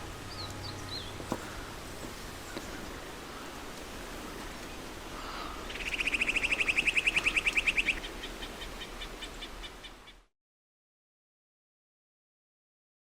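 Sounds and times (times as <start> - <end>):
outdoor background noise: 0.0 - 10.3
bird singing fast trill: 0.1 - 1.7, 5.7 - 10.0.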